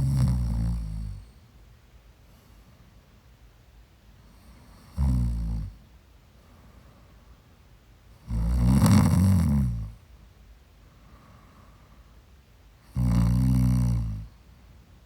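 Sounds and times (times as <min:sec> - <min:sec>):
woman snoring: 0:00.0 - 0:01.2, 0:08.3 - 0:09.8, 0:12.9 - 0:14.3.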